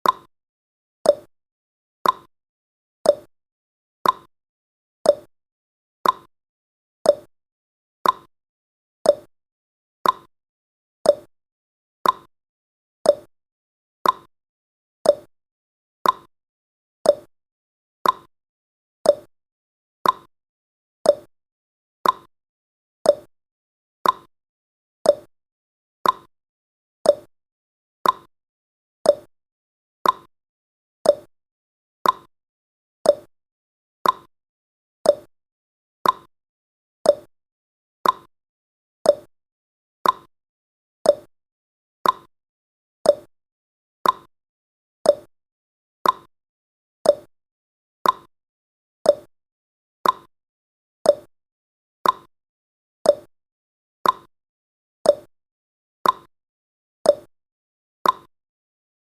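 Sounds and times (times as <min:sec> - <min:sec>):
clock ticking: 0:34.0 - 0:34.3.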